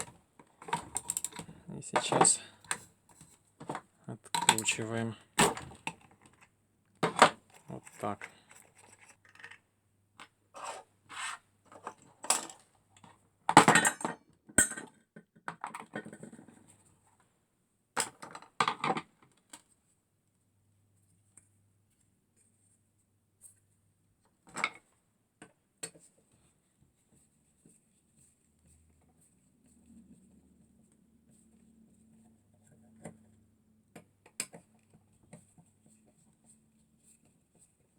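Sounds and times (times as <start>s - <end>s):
metal tools clinking and scraping: 4.3s - 4.9s.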